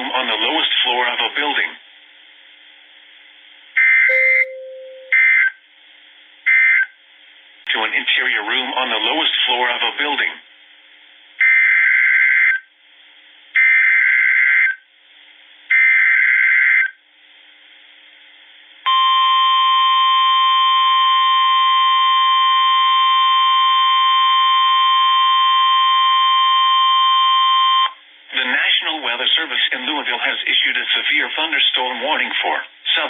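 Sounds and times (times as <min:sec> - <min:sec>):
steady alert tone: 0:04.1 - 0:05.2.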